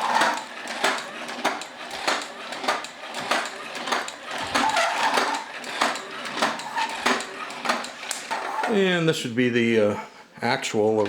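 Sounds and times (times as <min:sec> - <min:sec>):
robot feet clacking: 0:00.0 - 0:08.5
toy robot motor whirring: 0:00.0 - 0:08.8.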